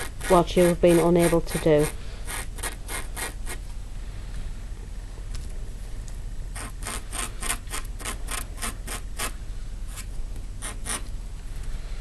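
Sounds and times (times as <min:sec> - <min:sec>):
fingernail scratching fabric: 0:00.0 - 0:03.6, 0:06.5 - 0:11.1.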